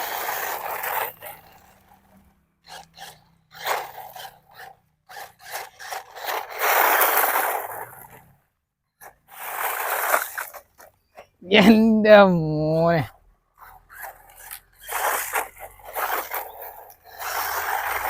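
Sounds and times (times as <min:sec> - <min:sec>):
tyres crunching on gravel: 0:00.0 - 0:08.4, 0:13.9 - 0:18.0.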